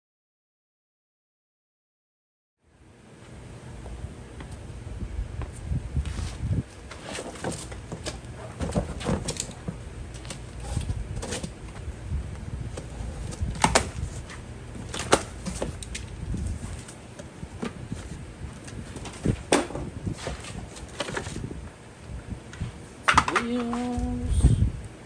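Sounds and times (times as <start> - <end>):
cardboard box rustling: 6.1 - 21.5.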